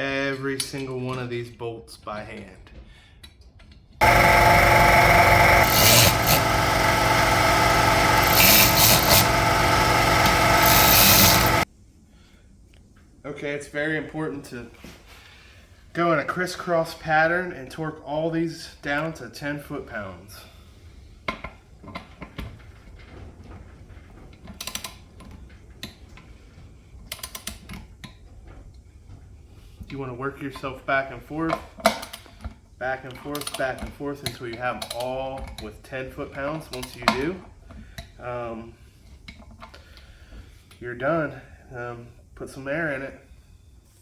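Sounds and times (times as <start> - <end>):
power tool driving bolts: 4.0 - 11.6
torque wrench ratcheting clicks: 4.0 - 11.6.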